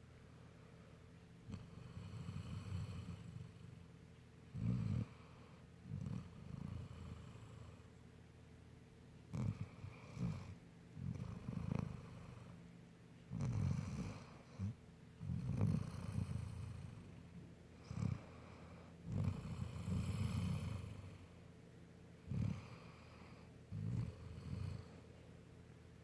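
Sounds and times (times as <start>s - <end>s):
dog snoring: 1.4s - 3.8s, 4.5s - 7.9s, 9.3s - 12.6s, 13.3s - 17.2s, 17.8s - 21.4s, 22.2s - 25.1s.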